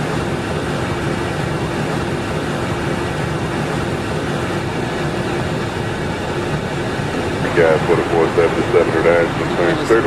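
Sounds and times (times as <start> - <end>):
airplane cabin drone: 0.0 - 10.0
faint steady hum: 4.7 - 10.0.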